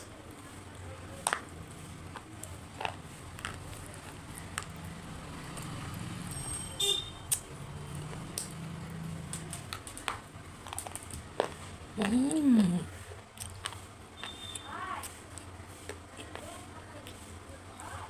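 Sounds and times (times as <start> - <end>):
low background hum: 0.0 - 18.0
food crunching while chewed: 2.1 - 6.1, 7.3 - 14.7.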